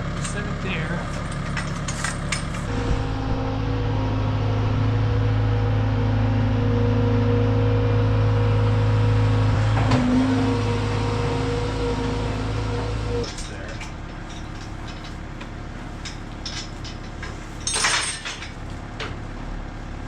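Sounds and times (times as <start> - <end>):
skid steer engine running: 0.0 - 20.0
clunk: 9.6 - 19.2.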